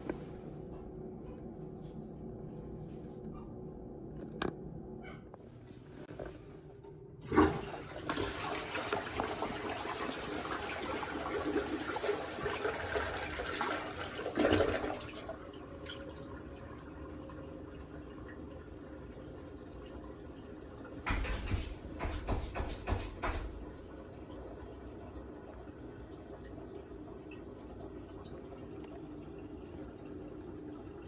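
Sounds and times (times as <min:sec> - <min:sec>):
toilet tank refilling hiss: 0:07.2 - 0:17.1
water rushing through toilet bowl: 0:07.2 - 0:31.0.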